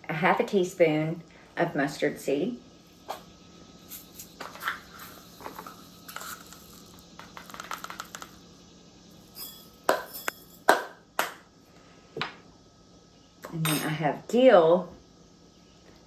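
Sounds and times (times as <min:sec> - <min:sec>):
seeds rattling into glass jars: 0:03.8 - 0:08.5
sharp clinks against jars: 0:09.3 - 0:10.9.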